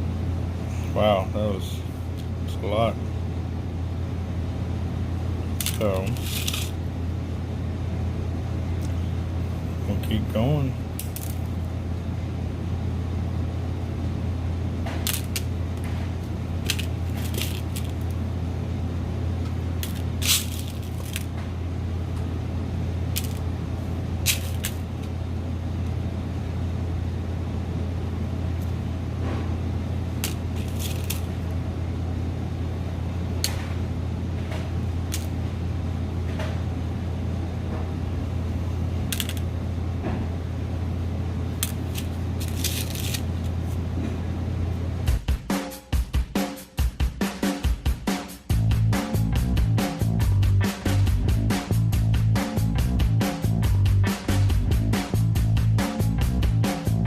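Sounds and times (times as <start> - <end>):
steady low hum: 0.0 - 45.5, 47.8 - 57.0
metal sleeves clicking: 5.6 - 6.7, 16.6 - 18.1, 30.2 - 31.3, 41.6 - 43.6.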